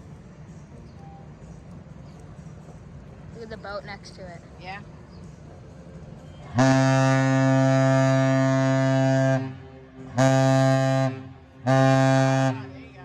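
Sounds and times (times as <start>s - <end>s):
deep ship horn blasts: 6.4s - 12.8s.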